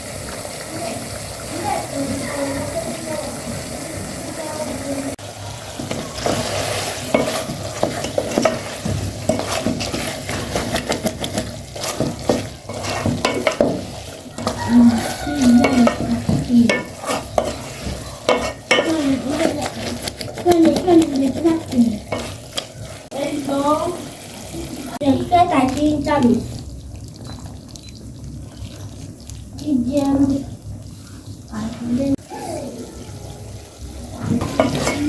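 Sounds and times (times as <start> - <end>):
food sizzling in a pan: 0.0 - 35.0
utensil scraping a pan: 5.6 - 23.3, 34.2 - 35.0.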